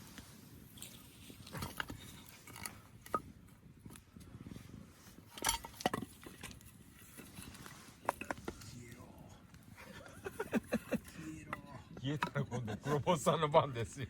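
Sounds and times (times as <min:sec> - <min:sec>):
camp gear knocks and clinks: 0:05.3 - 0:08.8.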